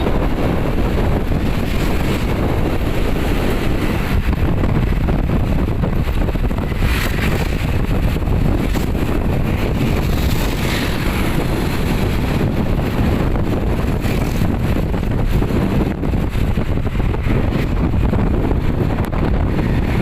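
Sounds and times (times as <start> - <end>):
low rumble: 0.0 - 20.0
wind buffeting on microphone: 0.0 - 20.0.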